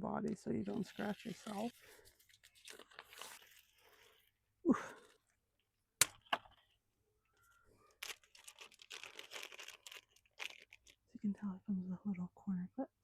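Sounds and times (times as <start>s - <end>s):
packaging rustling: 0.7s - 4.2s, 7.8s - 11.1s.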